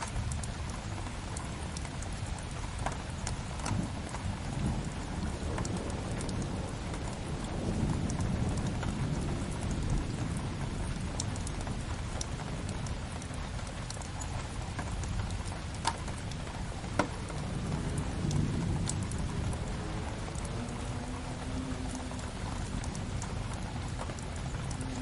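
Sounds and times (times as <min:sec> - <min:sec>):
fireplace fire crackling: 0:00.0 - 0:25.0
steady rain: 0:00.0 - 0:25.0.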